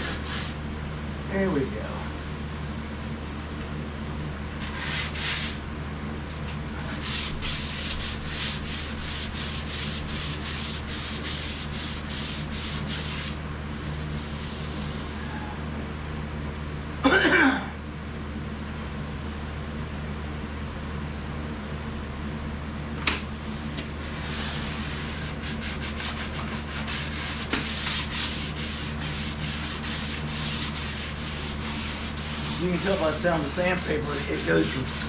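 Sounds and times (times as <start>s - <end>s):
steady low hum: 0.0s - 35.0s
sandpaper rubbing on metal: 4.7s - 5.6s, 7.0s - 13.4s, 23.4s - 35.0s.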